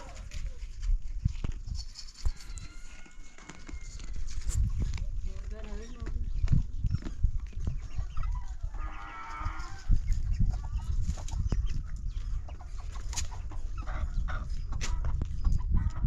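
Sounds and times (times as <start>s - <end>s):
farm animal calling: 5.4s - 11.0s.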